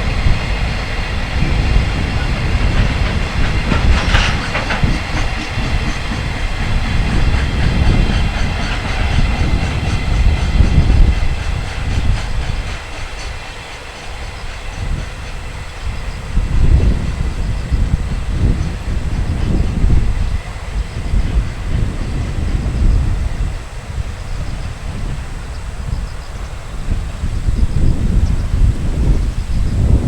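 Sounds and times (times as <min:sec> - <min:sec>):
wheels clattering over rail joints: 0:00.0 - 0:15.5
freight train rumble: 0:00.0 - 0:30.0.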